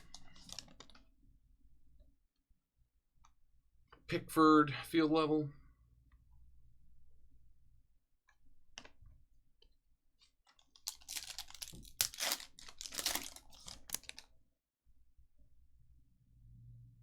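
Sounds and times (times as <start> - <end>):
wrapper crinkling and tearing: 0.0 - 1.0, 10.5 - 14.3.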